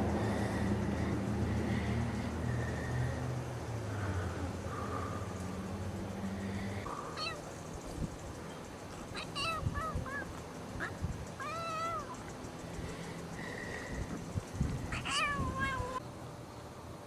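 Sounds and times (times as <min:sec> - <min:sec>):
kitten meowing: 0:07.2 - 0:07.4, 0:09.2 - 0:12.2, 0:14.9 - 0:16.0.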